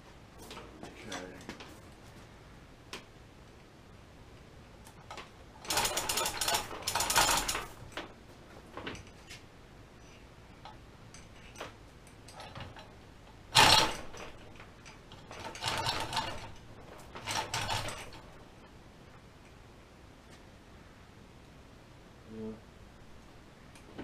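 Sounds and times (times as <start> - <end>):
metal parts rattling and clanking: 5.0 - 9.4, 10.0 - 18.7.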